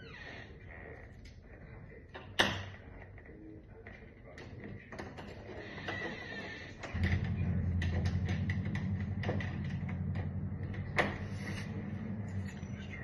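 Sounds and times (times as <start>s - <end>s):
motor humming: 6.9s - 13.0s.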